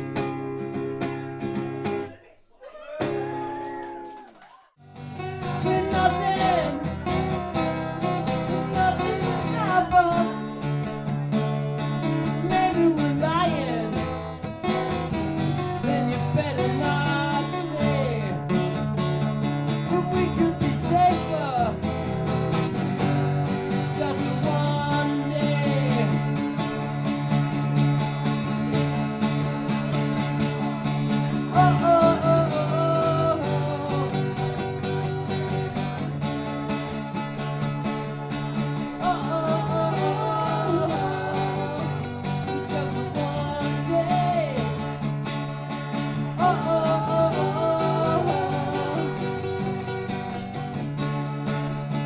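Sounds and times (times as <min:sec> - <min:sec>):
acoustic guitar strumming: 0:00.0 - 0:02.2, 0:04.8 - 0:52.0
person singing: 0:05.2 - 0:14.2, 0:15.3 - 0:18.9, 0:19.8 - 0:21.8, 0:23.6 - 0:26.4, 0:31.3 - 0:35.1, 0:38.8 - 0:45.1, 0:46.2 - 0:49.9.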